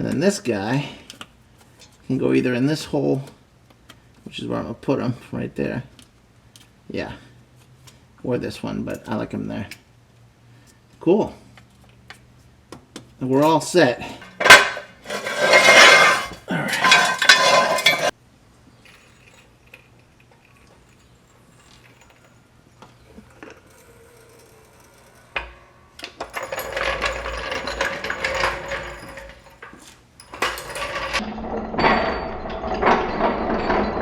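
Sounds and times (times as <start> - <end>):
metal tools clattering: 13.4 - 31.2.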